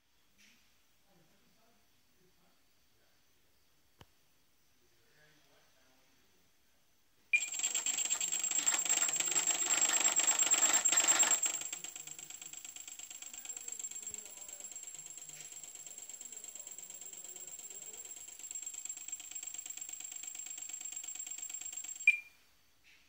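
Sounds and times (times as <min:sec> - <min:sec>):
model boat motor rattling whine: 0:07.4 - 0:22.1.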